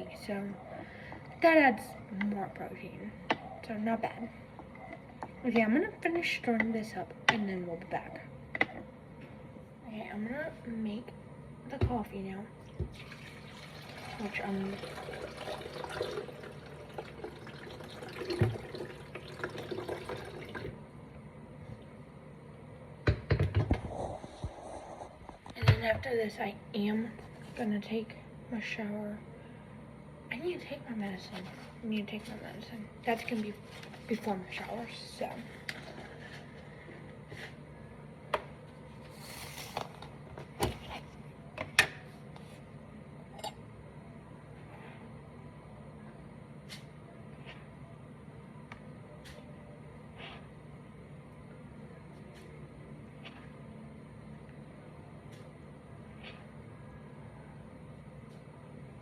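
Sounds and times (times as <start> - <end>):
water filling a container: 12.7 - 20.8.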